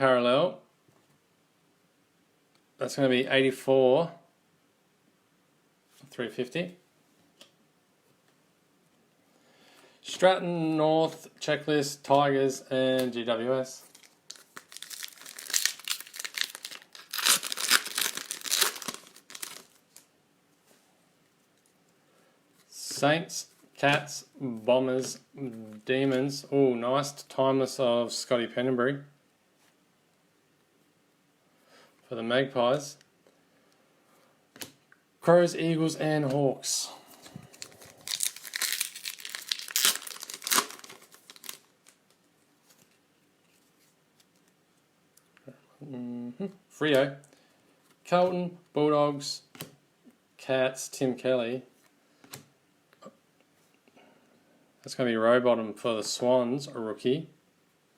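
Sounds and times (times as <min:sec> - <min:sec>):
wrapper torn and crinkled: 0:13.8 - 0:20.1, 0:37.5 - 0:42.9.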